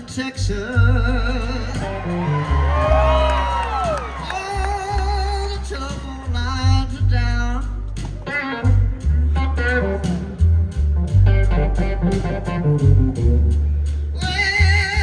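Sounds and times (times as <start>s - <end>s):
electric blues band playing: 0.0s - 15.0s.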